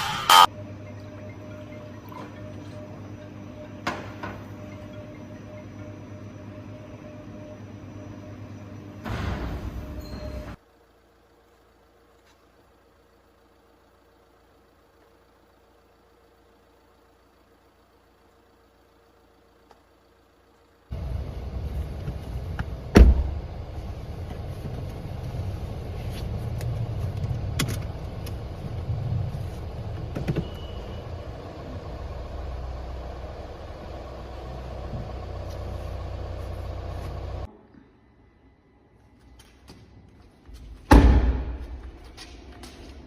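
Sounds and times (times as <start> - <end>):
car rumbling: 20.0 - 37.5
car door thump: 22.9 - 23.4.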